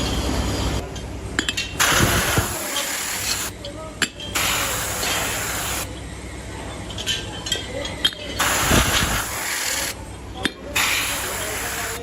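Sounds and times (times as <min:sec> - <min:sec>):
hissing spray bursts: 0:01.8 - 0:03.5, 0:04.4 - 0:05.9, 0:08.4 - 0:10.0, 0:10.8 - 0:12.0.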